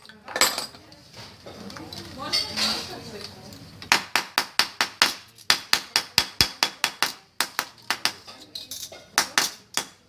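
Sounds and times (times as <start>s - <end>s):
hammer tapping on copper sheet: 3.9s - 8.3s.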